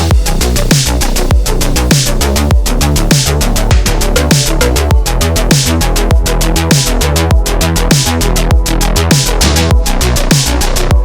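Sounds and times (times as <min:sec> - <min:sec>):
drum and bass dance music: 0:00.0 - 0:11.0.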